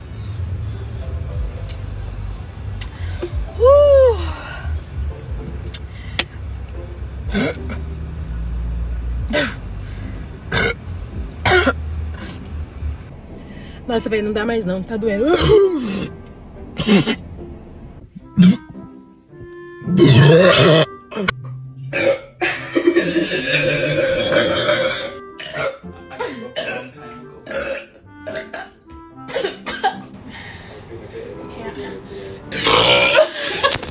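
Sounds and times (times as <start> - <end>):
low hum: 0.0 - 15.4
background music: 0.0 - 33.9
person stifling burps: 7.3 - 7.8, 10.5 - 10.8, 15.3 - 16.1, 16.8 - 17.2, 19.9 - 25.9, 26.6 - 29.9, 32.6 - 33.8.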